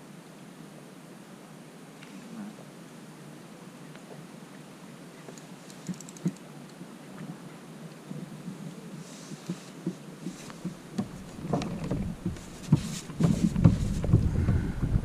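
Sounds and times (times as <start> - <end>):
handling knocks and clicks: 9.5 - 14.3
wind rumble on microphone: 10.6 - 15.0.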